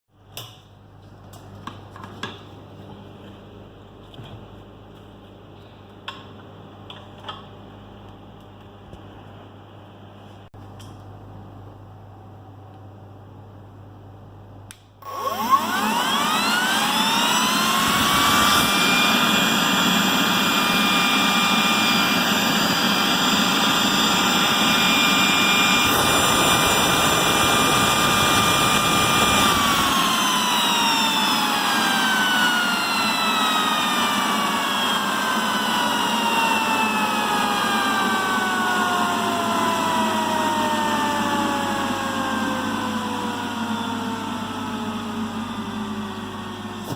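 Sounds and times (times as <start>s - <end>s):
blower motor switch click: 14.6s - 16.1s
blower motor whining: 15.0s - 46.9s.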